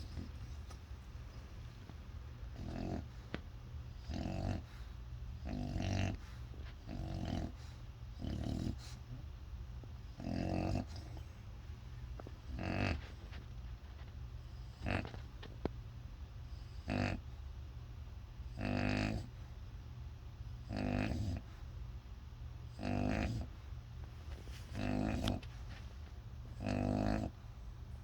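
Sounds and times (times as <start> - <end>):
dog snoring loudly: 2.5 - 3.2, 3.9 - 9.1, 10.1 - 11.2, 12.5 - 13.1, 14.6 - 15.2, 16.5 - 17.3, 18.5 - 19.3, 20.6 - 21.5, 22.7 - 23.6, 24.7 - 25.4, 26.5 - 27.4.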